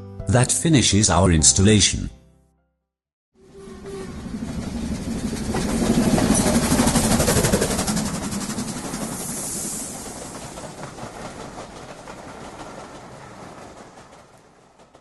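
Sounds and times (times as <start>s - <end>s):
train passing: 3.4s - 15.0s
rapid wheel clatter: 4.1s - 15.0s.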